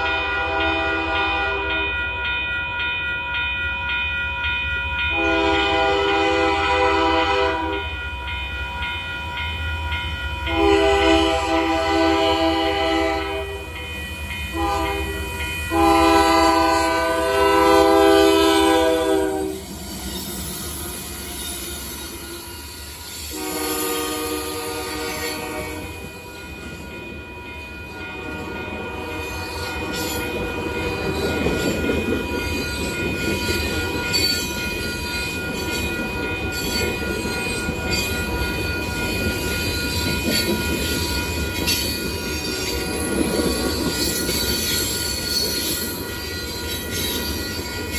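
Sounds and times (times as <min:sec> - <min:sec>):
locomotive horn blasts: 0:00.0 - 0:01.8, 0:05.1 - 0:07.8, 0:10.5 - 0:13.7, 0:14.5 - 0:19.6, 0:23.3 - 0:26.1
train rumbling past: 0:00.0 - 0:47.9
wheels squealing on rails: 0:09.9 - 0:26.9, 0:28.0 - 0:47.9.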